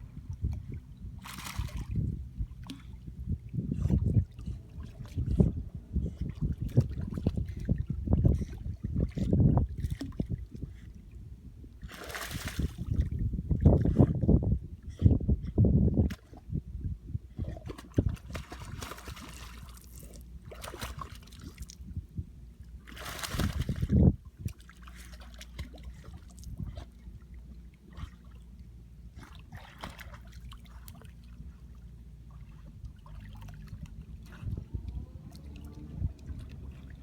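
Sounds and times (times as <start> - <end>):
low rumble: 0.0 - 9.7, 31.4 - 37.0
water splashing and sloshing: 0.0 - 37.0.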